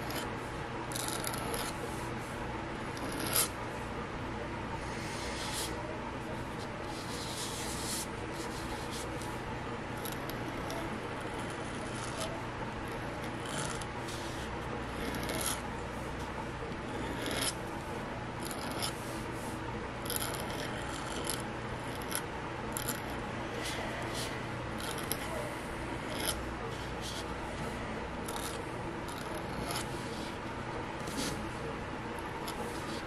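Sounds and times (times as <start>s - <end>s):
pen nib scratching on paper: 0.0s - 0.3s, 0.9s - 1.8s, 2.9s - 3.6s, 10.0s - 15.6s, 16.8s - 17.6s, 18.4s - 19.0s, 20.0s - 22.2s, 22.8s - 25.4s, 26.0s - 27.3s, 28.2s - 30.4s, 31.0s - 31.4s, 32.2s - 33.0s
steady low hum: 0.0s - 33.0s.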